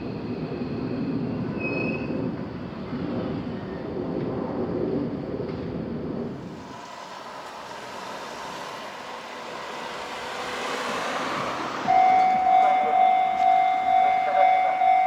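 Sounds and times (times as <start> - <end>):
train wheels rumbling on rails: 0.0 - 15.0
rushing noise: 6.3 - 15.0.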